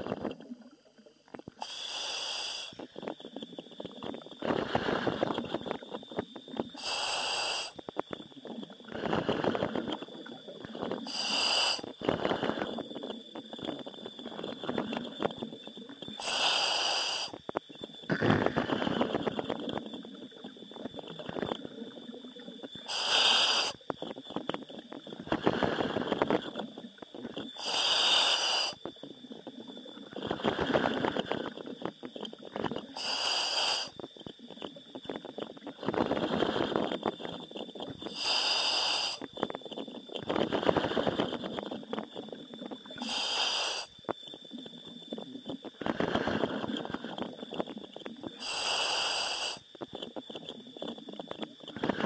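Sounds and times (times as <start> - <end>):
bubbling exhalations: 0.0 - 17.4, 18.1 - 43.9, 44.6 - 52.0
hissing regulator inhalation: 1.5 - 5.8, 6.7 - 8.0, 8.8 - 12.8, 16.0 - 17.4, 20.4 - 23.8, 25.2 - 26.6, 27.4 - 28.8, 32.8 - 34.0, 38.0 - 39.4, 40.3 - 41.6, 42.8 - 44.0, 48.3 - 49.7.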